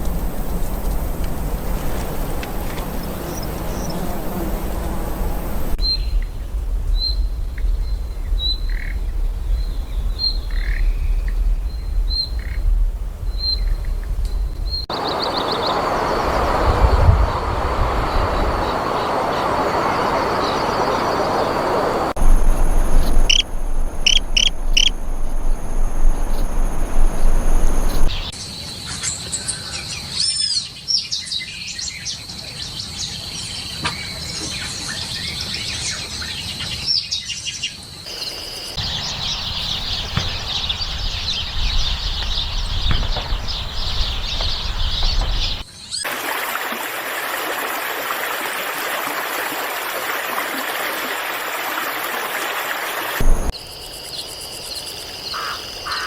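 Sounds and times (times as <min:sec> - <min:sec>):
chorus of calling animals: 0:00.0 - 0:05.8, 0:14.9 - 0:22.1
high insect drone: 0:00.0 - 0:05.8, 0:14.9 - 0:28.4, 0:38.1 - 0:45.6, 0:53.2 - 0:56.0
birds calling and chirping: 0:00.0 - 0:06.3, 0:13.4 - 0:46.1, 0:53.2 - 0:56.0.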